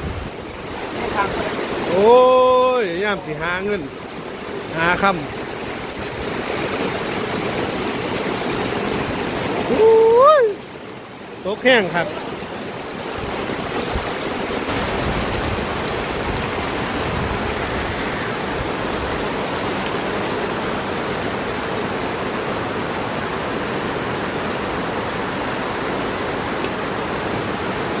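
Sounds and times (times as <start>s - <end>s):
heavy rain pouring: 0.0s - 28.0s.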